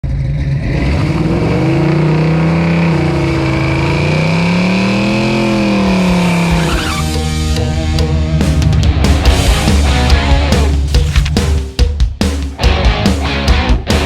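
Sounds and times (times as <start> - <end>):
car engine revving: 0.0 - 8.4.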